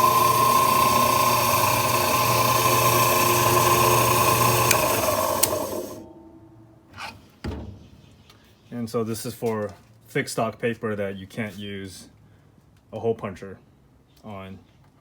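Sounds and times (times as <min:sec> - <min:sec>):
electric motor humming and whining: 0:00.0 - 0:06.1.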